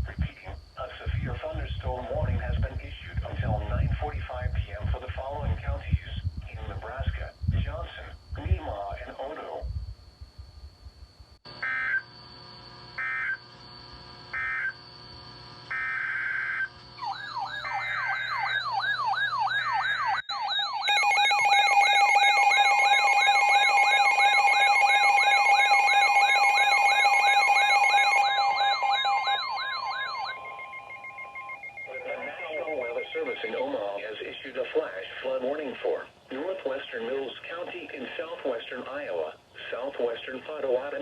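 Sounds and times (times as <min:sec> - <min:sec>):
warbling digital data tones: 0:00.0 - 0:09.8, 0:11.5 - 0:35.8
wailing siren-like alert: 0:14.3 - 0:14.8, 0:15.7 - 0:34.0
two-tone attention signal: 0:20.3 - 0:34.0.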